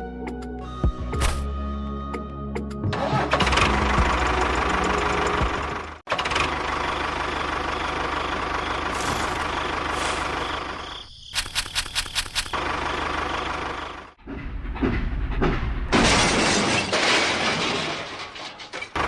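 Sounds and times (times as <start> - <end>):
motor running with rattling hum: 11.4 - 14.6.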